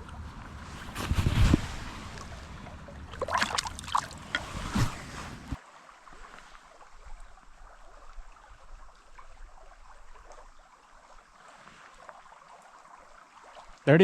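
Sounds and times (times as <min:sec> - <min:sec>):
wind rumble on microphone: 0:00.0 - 0:05.6
flowing creek water: 0:00.0 - 0:14.0.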